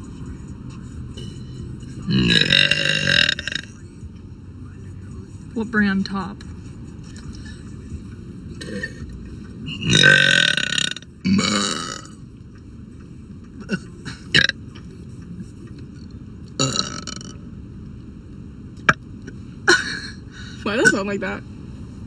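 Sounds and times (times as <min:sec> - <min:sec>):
girl burping loudly: 0:02.1 - 0:03.6, 0:09.8 - 0:12.1, 0:16.6 - 0:17.3.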